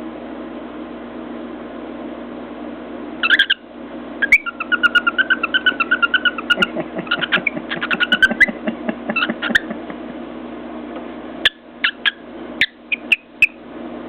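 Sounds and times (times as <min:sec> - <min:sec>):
cockatiel chattering: 0:03.2 - 0:03.6, 0:04.2 - 0:09.7, 0:11.4 - 0:13.6.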